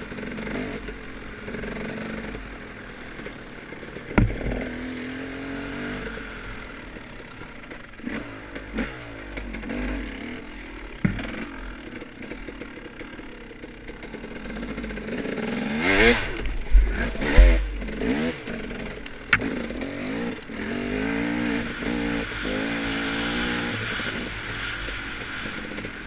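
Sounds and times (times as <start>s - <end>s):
dirt bike engine revving: 0.1s - 26.0s
sharp knocks: 4.2s - 4.6s, 11.0s - 11.4s, 16.3s - 18.2s.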